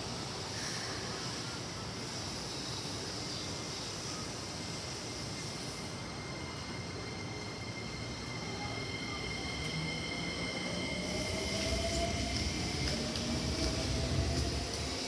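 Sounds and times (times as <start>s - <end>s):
electric train motor whine: 4.9s - 15.0s.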